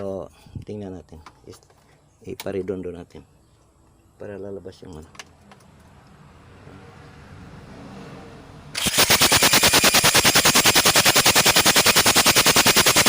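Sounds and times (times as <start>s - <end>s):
diesel engine cranking: 8.7s - 13.0s.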